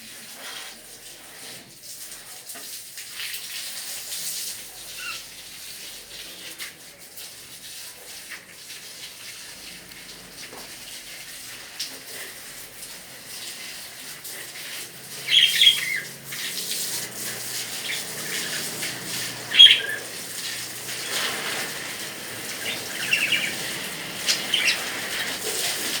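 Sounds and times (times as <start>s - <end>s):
steady hiss: 12.1s - 26.0s
lovebirds chirping: 15.1s - 25.4s.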